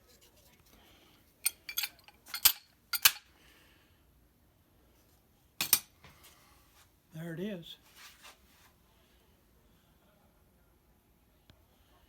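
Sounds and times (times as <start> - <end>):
metallic clicks and clinks: 1.4 - 3.3.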